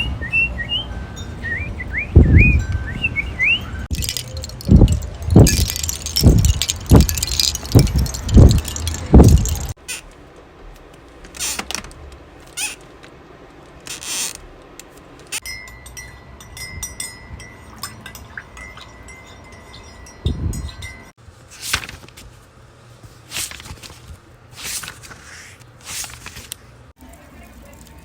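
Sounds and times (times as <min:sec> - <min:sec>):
light tinkling chimes: 0:00.8 - 0:01.8, 0:02.6 - 0:09.8, 0:15.4 - 0:21.2.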